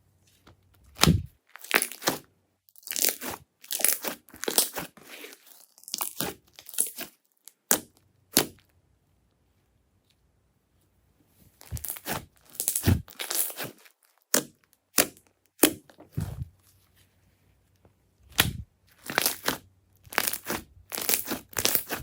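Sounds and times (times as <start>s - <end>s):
slime squished by hand: 11.6s - 16.5s, 18.3s - 22.0s.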